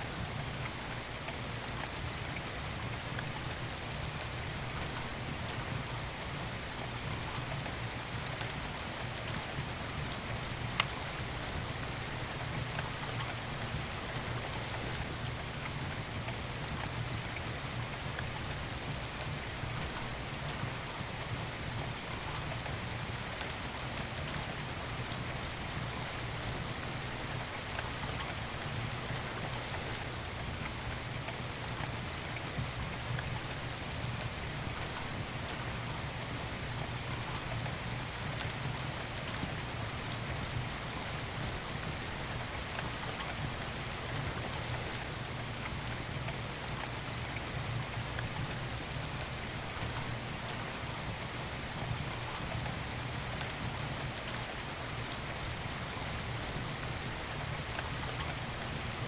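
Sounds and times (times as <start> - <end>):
steady rain: 0.0 - 59.0
faint clicks: 10.7 - 11.0.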